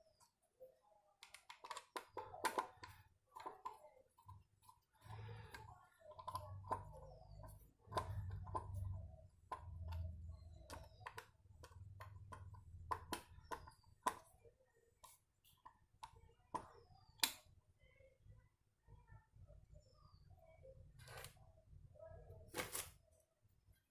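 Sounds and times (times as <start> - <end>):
small parts clicking and tapping: 1.2 - 14.4.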